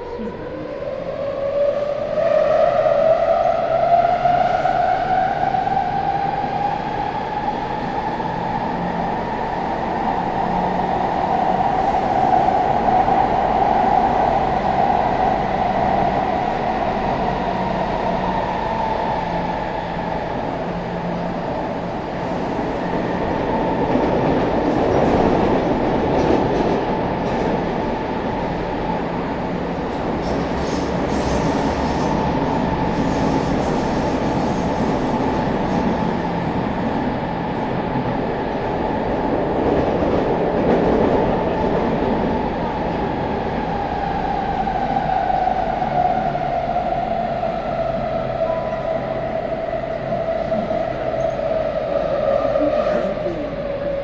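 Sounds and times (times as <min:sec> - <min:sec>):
train wheels rumbling on track: 0:03.5 - 0:54.0.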